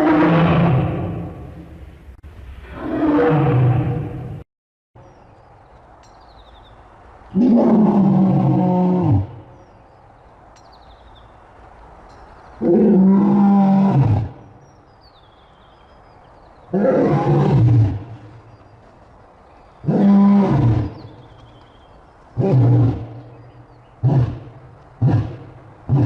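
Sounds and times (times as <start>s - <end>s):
deep lion roars: 0.0s - 1.6s, 2.6s - 4.4s, 7.3s - 9.5s, 12.6s - 14.5s, 16.7s - 18.4s, 19.8s - 21.3s, 22.4s - 26.0s.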